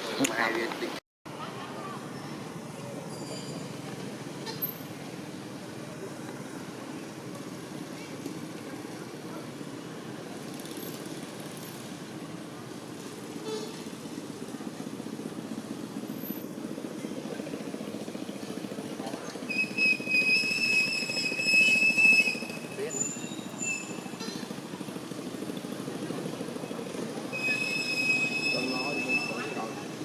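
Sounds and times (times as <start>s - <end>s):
passing traffic rumble: 0.0s - 30.0s
high thin squeal: 3.0s - 4.8s, 19.5s - 24.5s, 27.2s - 29.9s.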